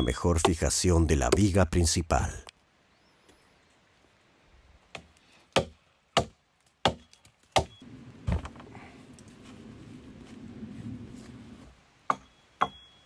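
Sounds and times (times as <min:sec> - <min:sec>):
axe chopping wooden log: 0:04.9 - 0:07.7.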